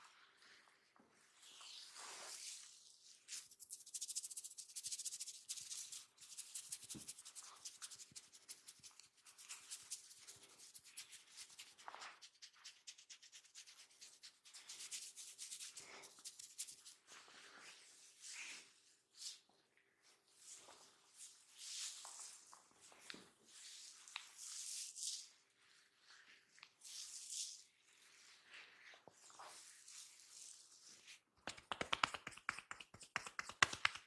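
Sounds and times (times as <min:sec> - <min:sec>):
hands rustling through hair: 0:02.0 - 0:17.0, 0:29.2 - 0:34.0.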